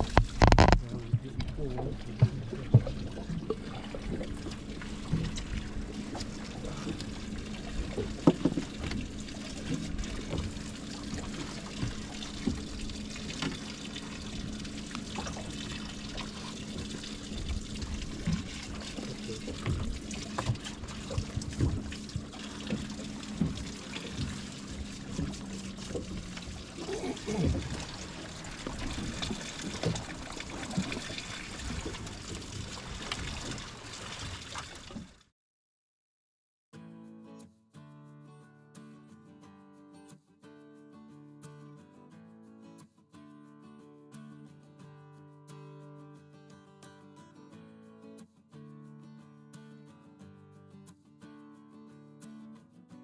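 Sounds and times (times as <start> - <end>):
small knocks: 0.0 - 0.8, 8.2 - 8.9
steady low hum: 0.0 - 32.9
water trickling and splashing: 0.0 - 35.2.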